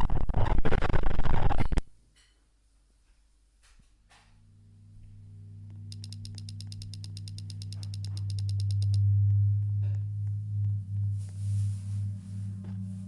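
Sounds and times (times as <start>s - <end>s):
low humming tone: 4.3s - 13.0s
rapid clicks: 5.9s - 9.0s.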